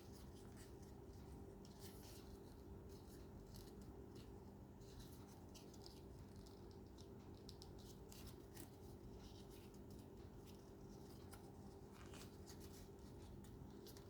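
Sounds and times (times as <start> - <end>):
low steady hum: 0.0 - 14.0
paper rustling and scraping: 7.8 - 14.0.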